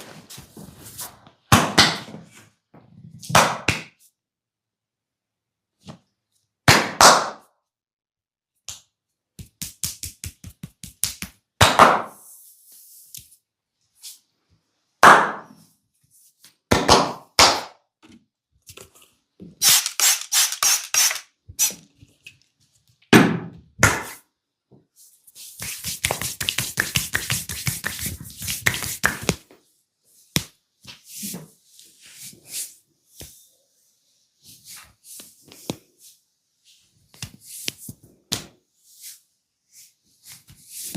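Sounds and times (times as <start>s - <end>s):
hands slapping and tapping: 8.6s - 12.2s, 25.6s - 29.6s, 30.3s - 31.0s, 37.1s - 38.6s.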